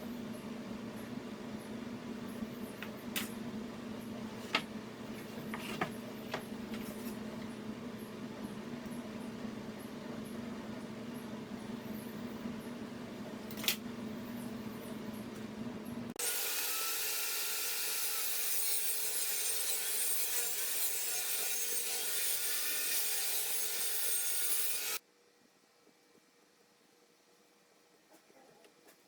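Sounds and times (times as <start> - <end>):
low machine hum: 0.0 - 16.2.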